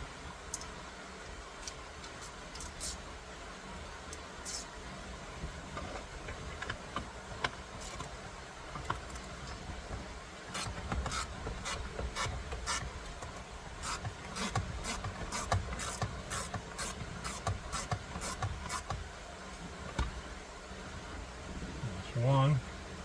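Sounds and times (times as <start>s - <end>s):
tools scraping and rubbing: 13.8s - 19.0s.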